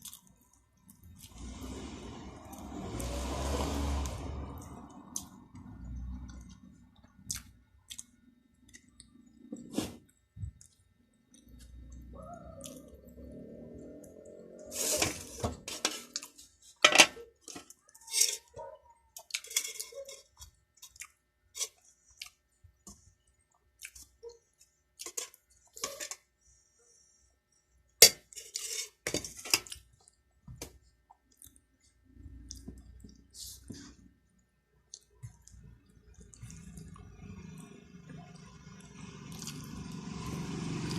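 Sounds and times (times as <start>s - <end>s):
chewing and mouth noises: 6.2s - 9.2s, 34.9s - 37.8s, 38.8s - 39.9s.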